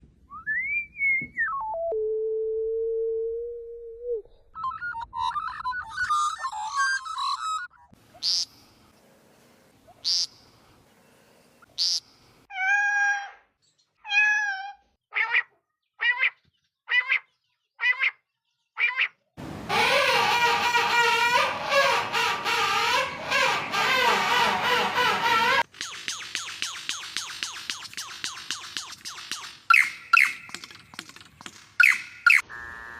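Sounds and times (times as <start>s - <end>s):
bird calling: 9.8s - 12.2s, 19.7s - 32.4s.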